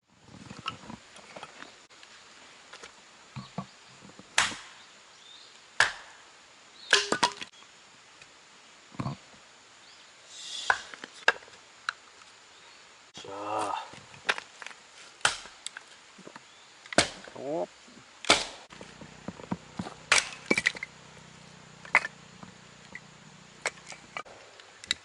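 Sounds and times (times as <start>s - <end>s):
firewood being chopped: 4.3s - 4.8s, 5.8s - 6.2s, 6.9s - 7.5s, 10.7s - 11.4s, 14.2s - 17.4s, 18.2s - 20.9s.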